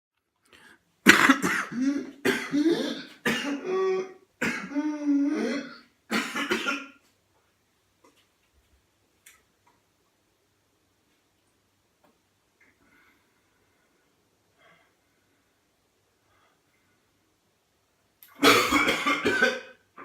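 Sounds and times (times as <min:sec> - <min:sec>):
person coughing fit: 0:01.1 - 0:07.0, 0:18.4 - 0:19.8.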